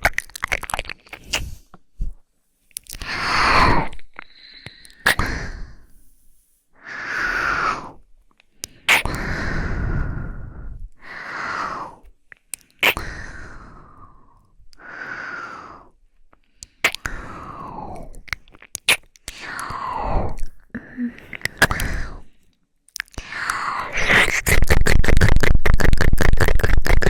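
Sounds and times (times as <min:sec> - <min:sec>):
mouth clicks: 0:12.3 - 0:13.1, 0:16.6 - 0:17.2, 0:17.9 - 0:22.2, 0:22.9 - 0:27.0
woman exhaling and sighing: 0:19.6 - 0:22.3.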